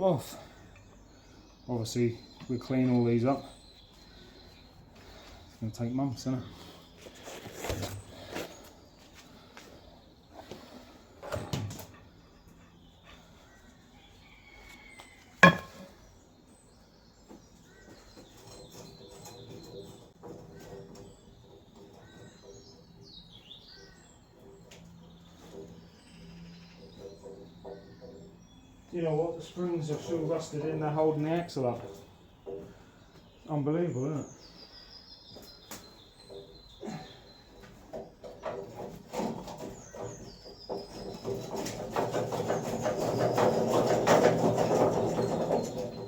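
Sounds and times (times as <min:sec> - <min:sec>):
birdsong chirps: 0:00.0 - 0:46.0
rapid knocks and rattles: 0:37.6 - 0:46.0.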